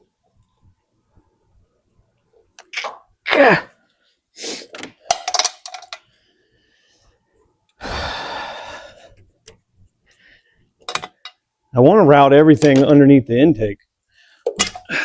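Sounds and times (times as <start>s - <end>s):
parts knocking and clattering: 4.8s - 6.0s, 10.8s - 11.4s, 14.4s - 14.9s.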